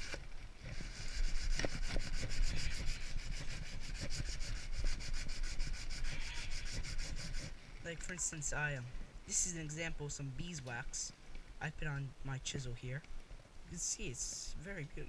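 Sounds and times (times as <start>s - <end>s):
sandpaper rubbing on wood: 0.0s - 7.5s.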